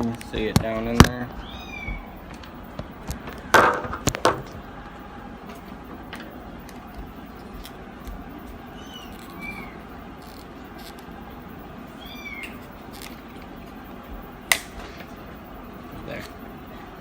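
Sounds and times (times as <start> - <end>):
plastic cracking and snapping: 2.3 - 4.6.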